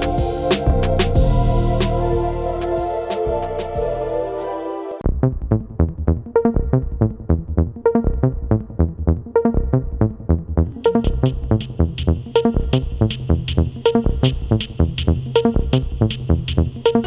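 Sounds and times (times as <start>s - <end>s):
electronic dance music: 0.0s - 5.0s.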